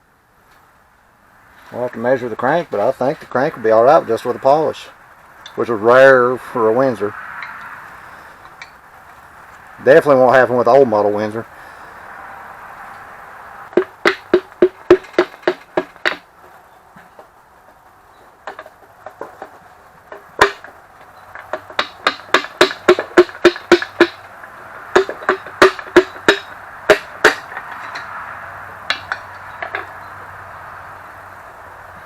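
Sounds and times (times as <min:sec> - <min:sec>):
hammer knocking on metal: 0:13.7 - 0:16.2, 0:20.1 - 0:20.8, 0:21.5 - 0:24.3, 0:24.9 - 0:28.1.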